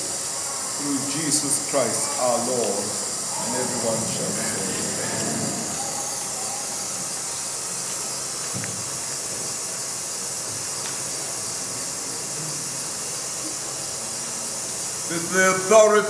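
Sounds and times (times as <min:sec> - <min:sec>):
faint room sounds: 0:00.0 - 0:07.3
high hiss: 0:00.0 - 0:16.0.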